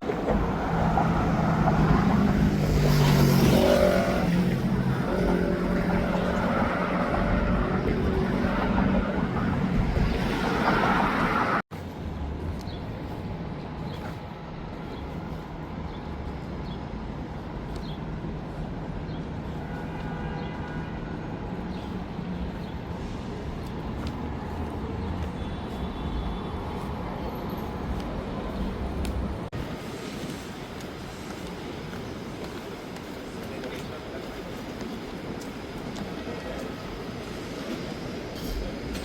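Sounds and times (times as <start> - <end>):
vehicle rumbling: 0.0 - 20.0.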